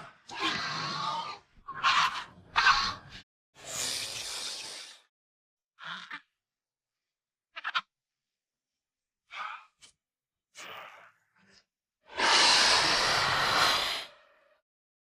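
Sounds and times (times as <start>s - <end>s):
loud breathy hissing call: 3.6s - 5.1s, 12.1s - 14.5s
breathy chirps and snorts: 12.1s - 14.6s.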